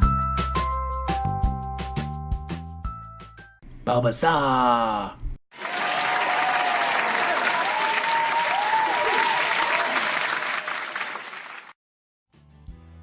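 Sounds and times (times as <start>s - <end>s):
music: 0.0s - 3.6s, 12.3s - 13.0s
crowd applause: 5.5s - 11.8s
high whoops: 5.7s - 10.2s.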